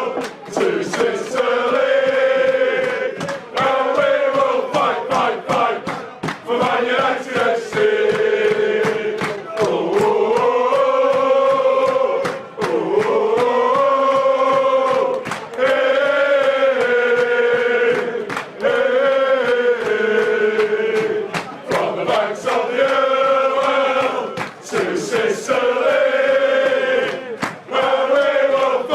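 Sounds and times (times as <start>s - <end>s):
crowd chanting: 0.0s - 28.9s.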